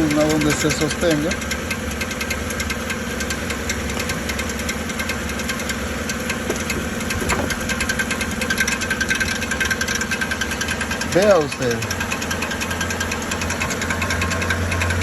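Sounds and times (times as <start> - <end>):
metallic knocking: 0.0 - 15.0
truck engine idling: 0.0 - 15.0.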